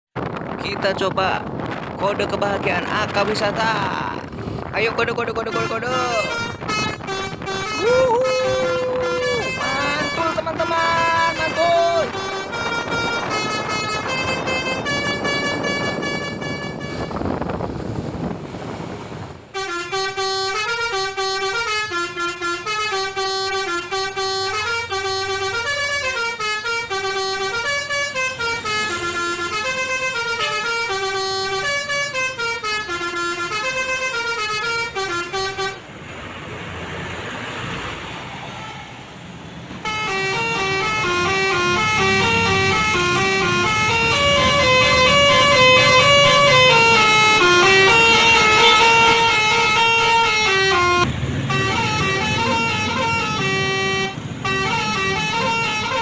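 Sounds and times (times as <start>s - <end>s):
rushing noise: 0.2s - 19.6s
bus horn playing multi-note tunes: 5.3s - 17.5s, 19.5s - 35.9s, 39.8s - 56.0s.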